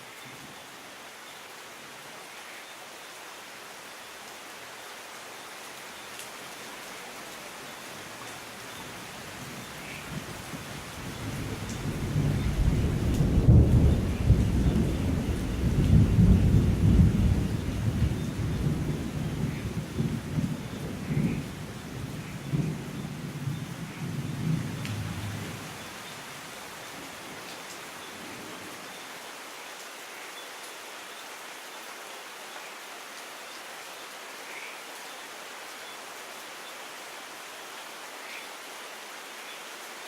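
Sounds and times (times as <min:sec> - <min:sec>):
steady rain: 0:00.0 - 0:40.0
thunder rumbling: 0:11.0 - 0:21.4.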